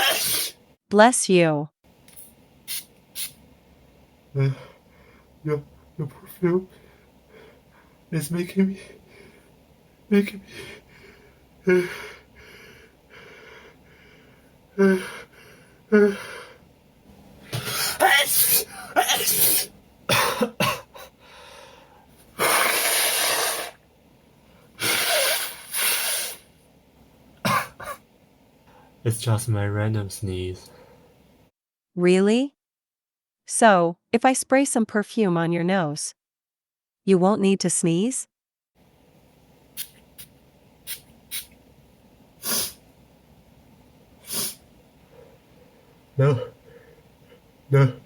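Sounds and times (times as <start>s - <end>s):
man sneezing: 0.0s - 0.6s, 17.5s - 21.1s, 22.4s - 23.8s, 24.8s - 26.4s, 27.4s - 28.0s, 42.4s - 42.8s, 44.2s - 44.6s, 46.2s - 46.6s, 47.7s - 48.0s
man sniffing: 0.0s - 0.6s, 22.3s - 23.8s, 24.8s - 26.5s, 42.4s - 42.8s, 44.2s - 45.4s, 46.2s - 47.0s.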